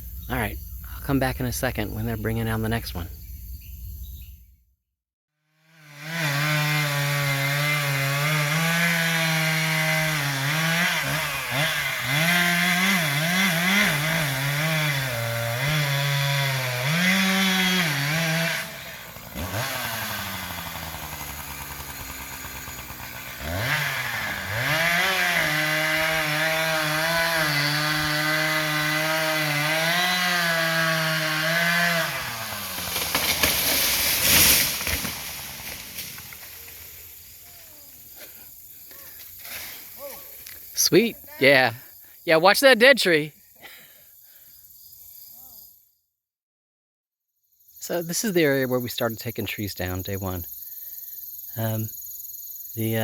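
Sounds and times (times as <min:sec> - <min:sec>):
chainsaw cutting into tree: 0:05.5 - 0:40.8.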